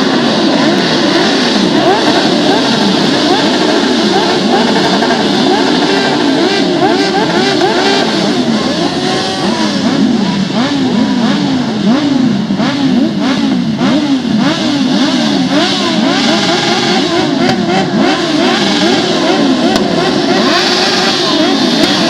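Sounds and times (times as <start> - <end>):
motorcycle engines revving: 0.0 - 22.0.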